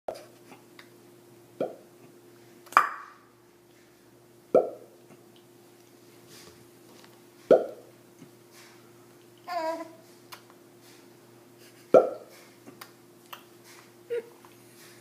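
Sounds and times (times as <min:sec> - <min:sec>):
lip popping sounds: 0:01.6 - 0:01.9, 0:02.6 - 0:03.2, 0:04.5 - 0:05.5, 0:07.5 - 0:07.9, 0:11.9 - 0:13.6.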